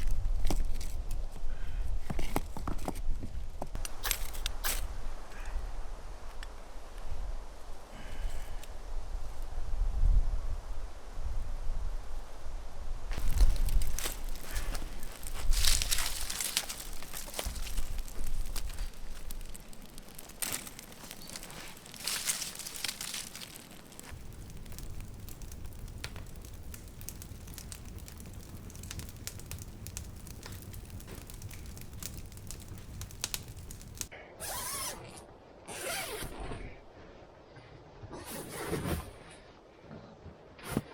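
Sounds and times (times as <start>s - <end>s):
crinkling and rustling: 0.0s - 1.4s, 13.1s - 34.1s
wind buffeting microphone: 8.8s - 22.7s.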